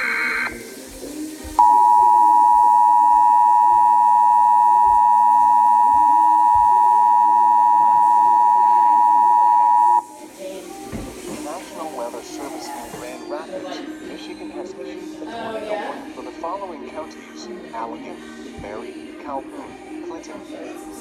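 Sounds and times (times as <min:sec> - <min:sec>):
digital header screech: 0:00.0 - 0:00.6
loud steady dual tone: 0:00.0 - 0:00.6, 0:01.6 - 0:10.1.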